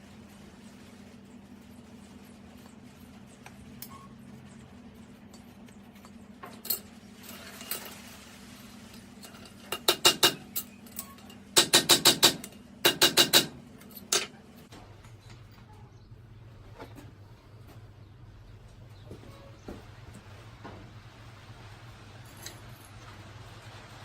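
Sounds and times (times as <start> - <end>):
hammer striking metal: 11.6 - 14.3.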